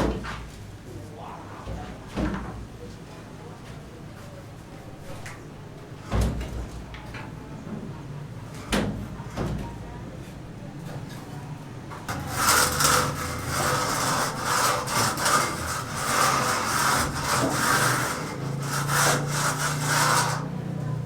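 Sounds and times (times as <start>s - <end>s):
hand saw cutting wood: 12.1s - 21.0s.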